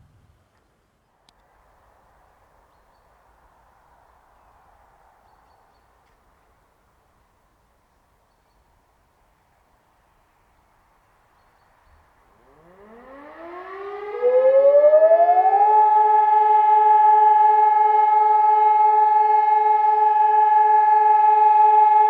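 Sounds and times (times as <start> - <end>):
civil defence sirens: 12.3 - 22.0
faint sirens spinning up: 12.3 - 22.0
loud siren steady tone: 12.3 - 22.0.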